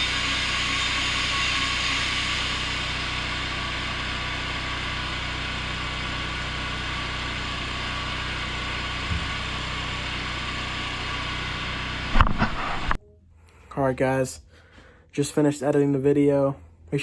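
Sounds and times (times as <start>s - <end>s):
engine-like hum: 0.0s - 15.1s
brief thump: 9.1s - 9.4s, 12.2s - 13.0s.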